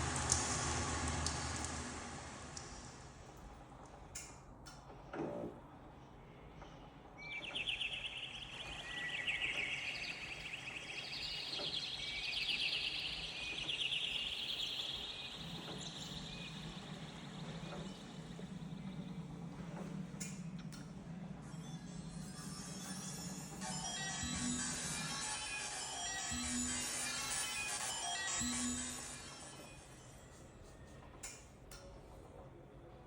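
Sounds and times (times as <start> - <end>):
chirping birdsong trills: 7.2 - 19.3.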